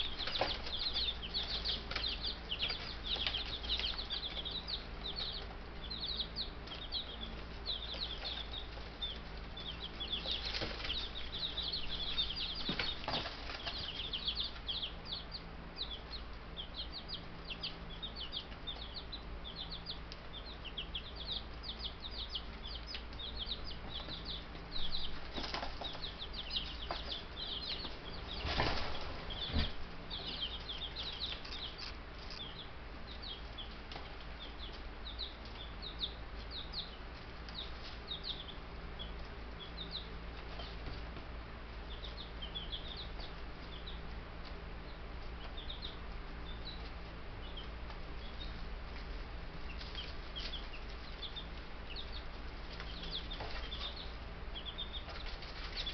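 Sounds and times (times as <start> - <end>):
chicks peeping: 0.0 - 55.9
steady low hum: 0.0 - 55.9
rustling or fluttering: 25.1 - 29.9.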